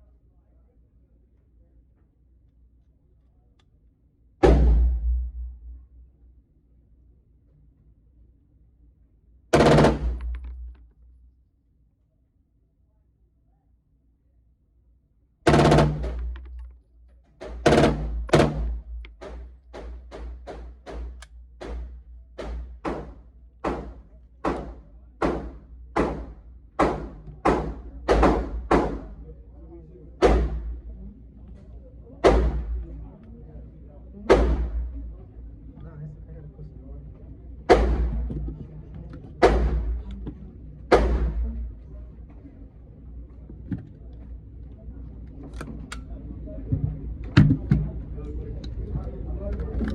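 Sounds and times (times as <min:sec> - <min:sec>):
low steady rumble: 0:00.0 - 0:49.9
gunshots echoing: 0:04.4 - 0:05.4, 0:09.6 - 0:10.8, 0:15.5 - 0:16.6, 0:17.4 - 0:29.1, 0:30.2 - 0:30.8, 0:34.3 - 0:34.9, 0:37.7 - 0:38.3, 0:39.4 - 0:40.0, 0:40.9 - 0:41.4
gunshots with ringing tail: 0:04.4 - 0:05.6, 0:09.6 - 0:10.7, 0:15.5 - 0:16.6, 0:17.5 - 0:19.1.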